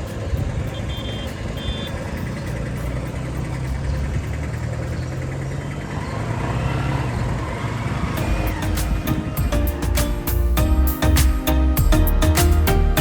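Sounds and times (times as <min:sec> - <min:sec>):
car engine droning: 0:00.0 - 0:09.8.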